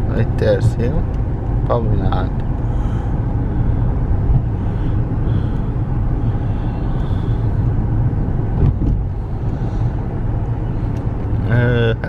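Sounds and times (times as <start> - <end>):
car engine and tyre rumble: 0.0 - 12.0.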